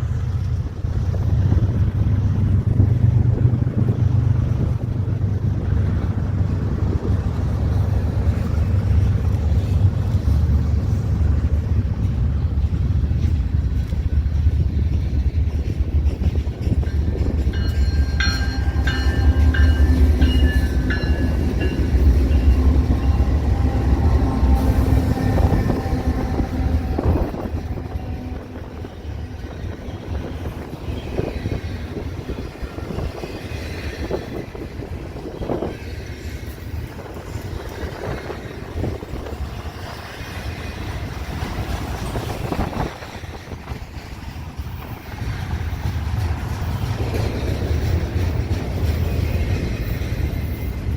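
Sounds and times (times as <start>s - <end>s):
freight train rumbling: 0.0s - 50.9s
train wheels clicking on rail joints: 0.0s - 50.9s
high ringing tones: 16.8s - 26.8s.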